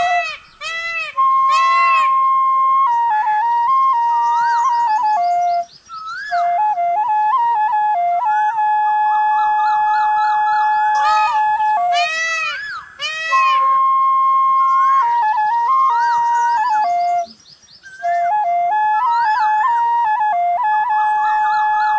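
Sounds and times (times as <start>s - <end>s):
bamboo flute ringtone melody: 0.0s - 21.9s.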